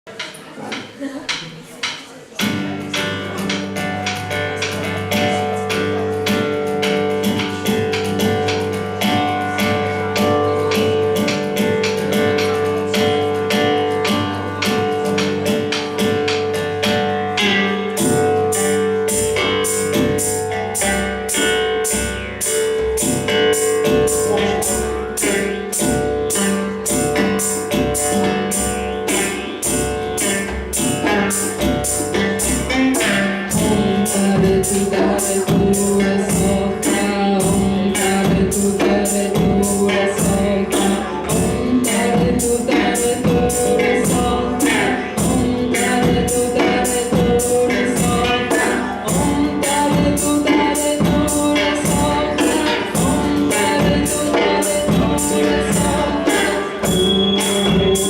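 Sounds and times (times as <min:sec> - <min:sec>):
guitar strumming: 0:02.4 - 0:58.0
held drone tones: 0:02.9 - 0:58.0.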